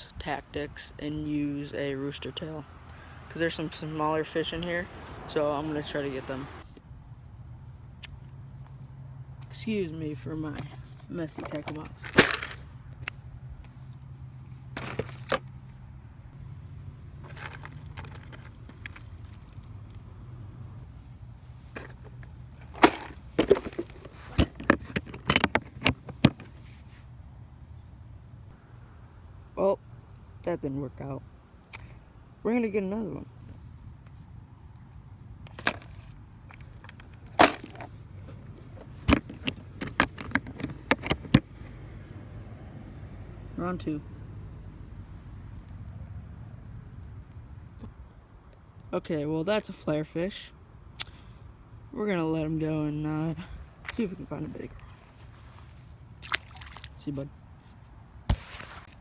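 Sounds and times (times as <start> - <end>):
fishing tackle clicking and knocking: 21.8 - 26.5, 39.0 - 41.5.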